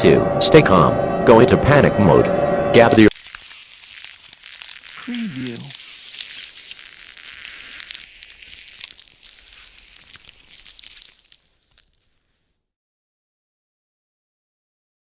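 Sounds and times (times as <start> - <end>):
crackling static with clicks: 2.9 - 12.6.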